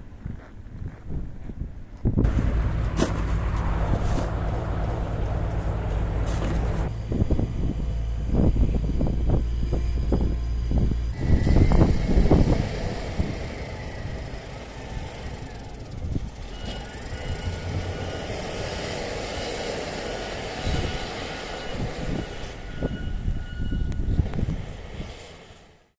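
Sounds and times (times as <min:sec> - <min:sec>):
wind buffeting microphone: 0:00.0 - 0:25.4
faint high whine: 0:04.5 - 0:25.5
hiss of wind-driven snow: 0:11.2 - 0:15.4.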